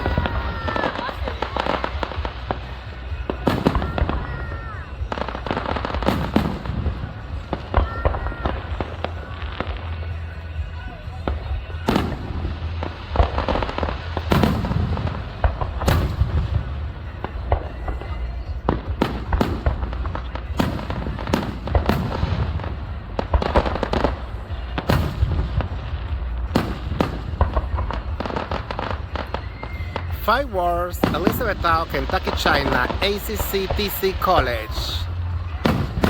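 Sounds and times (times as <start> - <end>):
steady low rumble: 0.0 - 36.0
fireworks shells bursting: 26.5 - 36.0.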